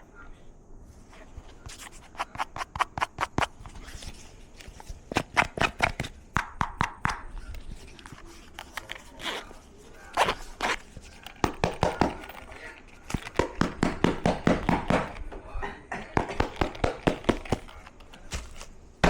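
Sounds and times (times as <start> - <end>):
headphone packaging taps and clicks: 1.6 - 3.8, 4.6 - 9.5, 10.2 - 15.3, 16.0 - 18.8.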